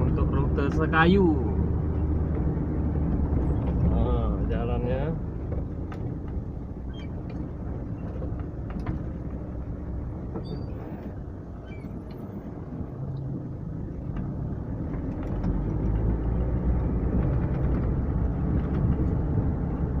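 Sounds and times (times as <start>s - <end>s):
vehicle engine and road rumble: 0.0s - 20.0s.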